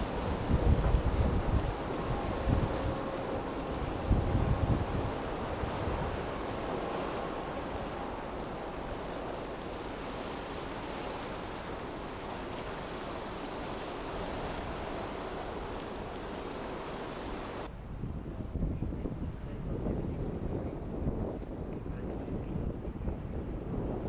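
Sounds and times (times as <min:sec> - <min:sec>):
rough sea waves breaking: 0:00.0 - 0:17.7
strong wind: 0:00.0 - 0:24.0.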